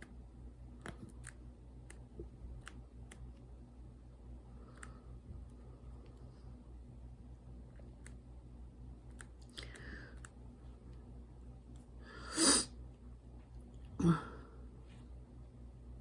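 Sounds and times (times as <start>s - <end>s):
person breathing noisily: 12.0s - 12.7s.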